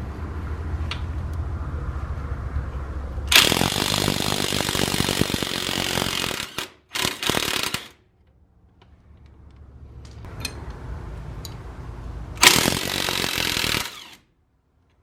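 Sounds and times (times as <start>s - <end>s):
power wrench running: 3.3s - 8.0s, 12.4s - 14.2s.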